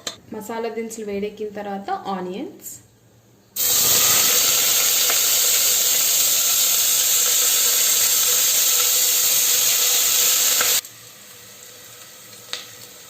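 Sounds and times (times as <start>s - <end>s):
onions sizzling in hot oil: 3.6s - 13.0s.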